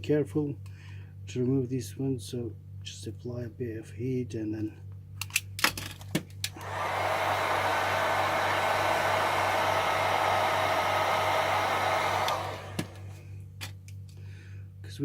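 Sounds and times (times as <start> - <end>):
heat gun blowing hot air: 6.5 - 13.2.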